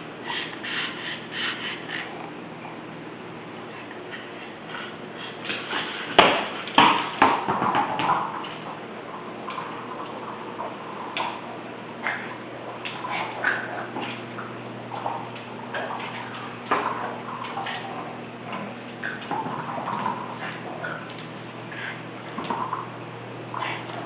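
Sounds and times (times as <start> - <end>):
dog breathing noisily: 0.2 - 2.4.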